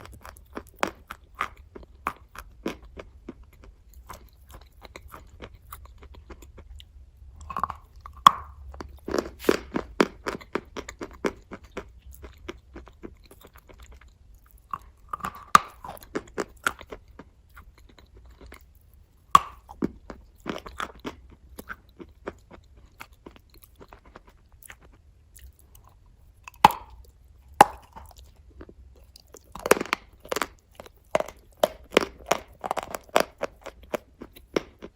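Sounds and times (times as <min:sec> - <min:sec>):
person crunching chalk: 0:29.4 - 0:34.9.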